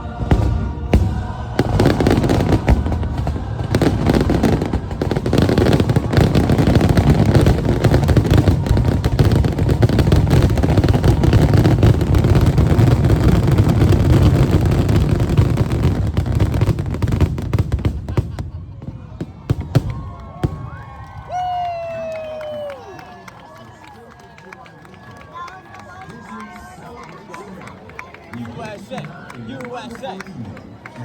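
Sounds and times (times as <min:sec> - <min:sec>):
fireworks bangs and crackling: 0:00.0 - 0:21.5.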